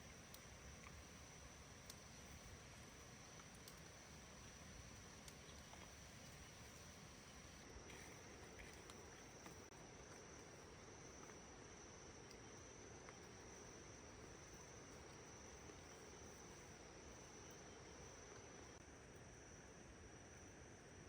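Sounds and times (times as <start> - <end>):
low background hiss: 0.0 - 9.6.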